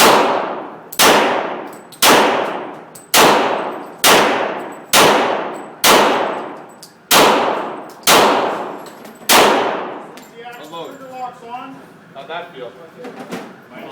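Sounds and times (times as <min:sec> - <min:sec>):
handgun shots echoing: 0:00.0 - 0:10.2.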